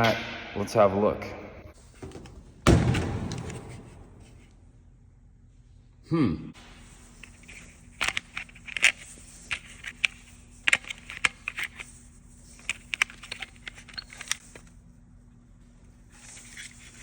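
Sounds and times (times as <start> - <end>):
plastic parts clicking and scraping: 7.2 - 14.8.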